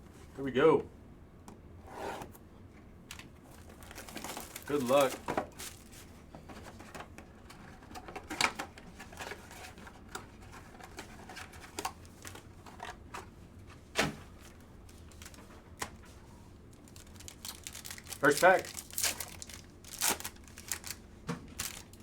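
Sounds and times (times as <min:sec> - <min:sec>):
card packs clicking and tapping: 0:03.1 - 0:05.9.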